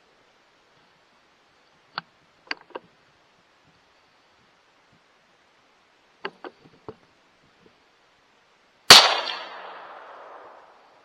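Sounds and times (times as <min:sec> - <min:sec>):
gunshot: 0:08.9 - 0:10.6.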